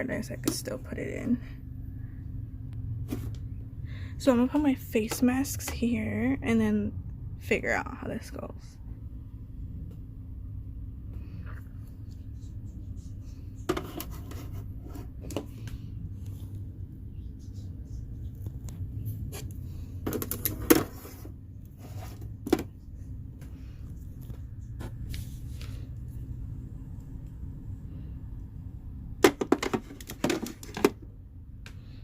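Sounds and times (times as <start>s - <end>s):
steady low hum: 0.0s - 32.0s
items knocking and clicking: 13.7s - 14.5s, 20.0s - 21.2s, 22.0s - 22.8s, 29.2s - 31.0s.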